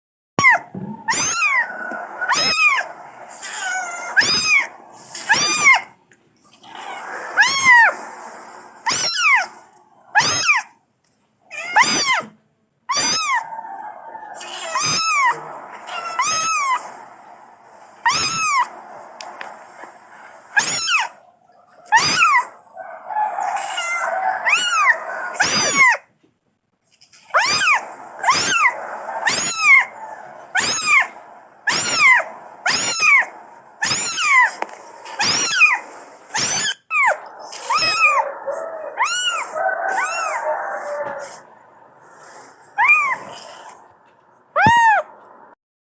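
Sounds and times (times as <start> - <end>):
kitten meowing: 0.4 - 5.9, 6.7 - 8.0, 8.8 - 9.6, 10.2 - 10.7, 11.5 - 12.3, 12.9 - 13.4, 14.4 - 17.0, 18.0 - 18.7, 20.6 - 21.2, 21.9 - 22.5, 23.5 - 26.0, 27.3 - 30.0, 30.6 - 38.3, 38.9 - 41.4, 42.8 - 43.7, 44.6 - 45.1.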